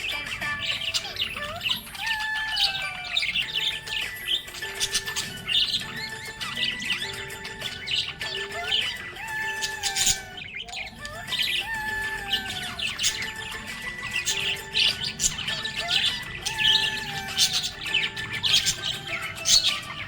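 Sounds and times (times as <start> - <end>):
background music with held notes: 0.0 - 20.0
budgerigars chirping: 0.0 - 20.0.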